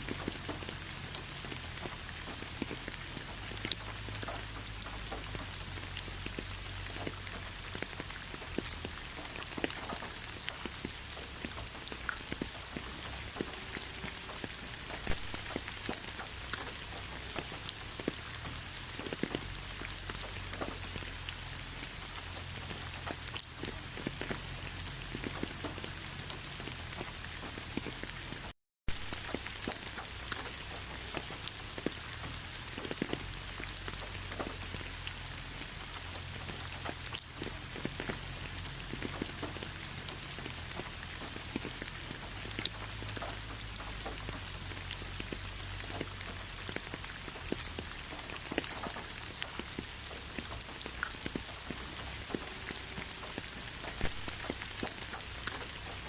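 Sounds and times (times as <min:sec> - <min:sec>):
raindrops ticking: 0:00.0 - 0:56.0
steady rainfall: 0:00.0 - 0:56.0.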